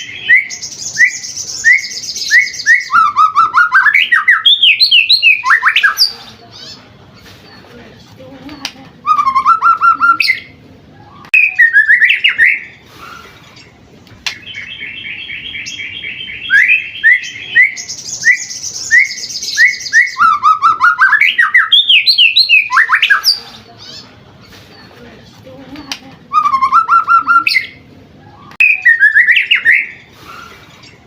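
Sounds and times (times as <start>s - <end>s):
bird singing varied song: 0.0s - 31.0s.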